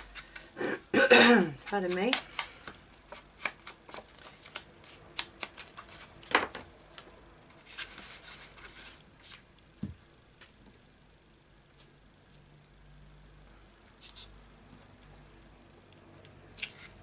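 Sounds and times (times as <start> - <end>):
paper rubbing and rustling: 3.1 - 9.5.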